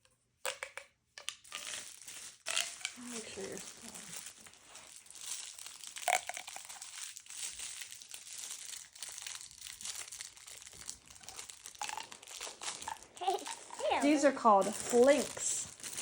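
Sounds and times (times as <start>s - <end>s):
plastic packaging crinkling: 1.2s - 16.0s.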